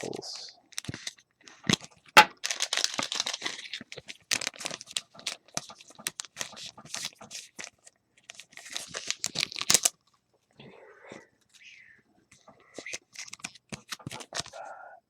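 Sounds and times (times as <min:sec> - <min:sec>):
plastic wrapping crinkling: 0:00.8 - 0:10.0.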